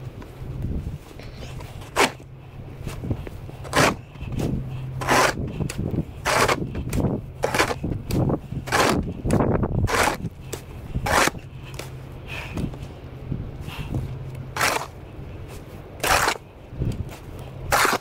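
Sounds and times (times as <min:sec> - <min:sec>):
snow shovel scraping snow: 0:00.9 - 0:05.6, 0:06.2 - 0:06.8, 0:07.4 - 0:07.9, 0:08.6 - 0:09.2, 0:09.8 - 0:10.3, 0:10.9 - 0:11.5, 0:14.5 - 0:16.4, 0:17.1 - 0:18.0.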